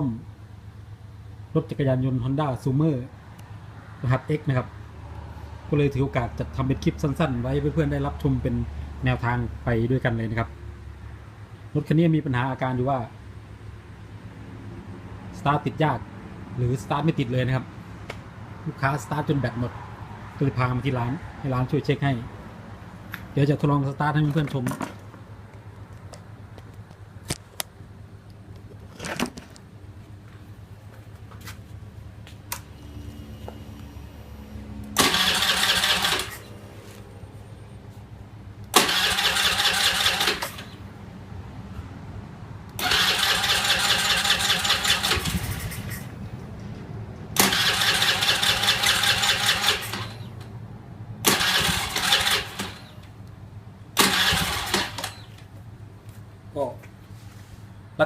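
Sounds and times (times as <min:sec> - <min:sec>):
scooter starter cranking engine: 0:35.0 - 0:36.7, 0:38.7 - 0:40.8, 0:42.8 - 0:46.1, 0:47.4 - 0:50.4, 0:51.2 - 0:53.1, 0:54.0 - 0:55.4.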